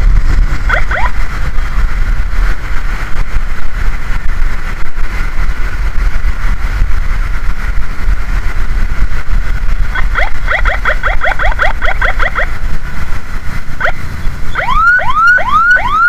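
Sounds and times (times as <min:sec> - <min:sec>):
ambulance engine and road rumble: 0:00.0 - 0:16.0
siren yelping: 0:00.7 - 0:01.2, 0:09.9 - 0:12.5, 0:13.8 - 0:16.0.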